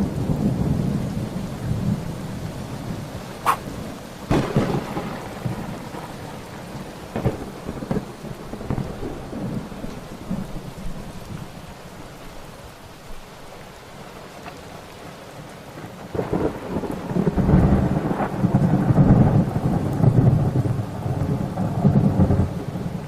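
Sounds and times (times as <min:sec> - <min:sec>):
thunder rumbling: 0:00.0 - 0:11.6, 0:16.1 - 0:23.0
steady rain: 0:00.0 - 0:23.0
sharp thunder cracks: 0:03.4 - 0:06.4.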